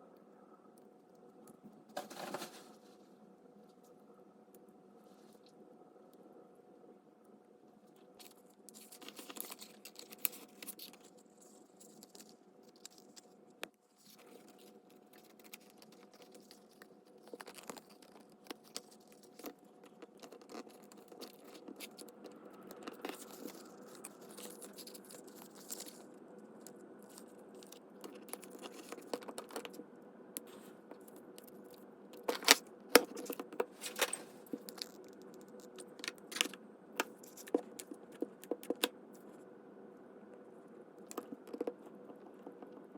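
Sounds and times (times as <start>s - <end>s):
paper and craft materials handled: 8.1s - 29.8s, 30.4s - 39.3s.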